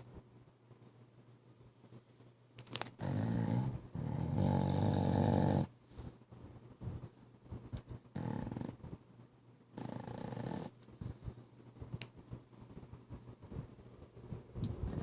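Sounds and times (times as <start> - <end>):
dog snoring: 3.0 - 5.7, 8.1 - 9.0, 9.8 - 11.3.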